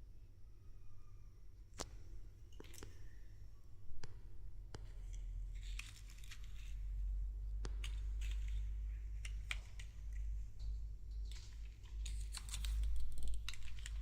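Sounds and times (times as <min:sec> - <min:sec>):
faint low hum: 0:00.0 - 0:14.0
packaging rustling and tearing: 0:11.3 - 0:14.0.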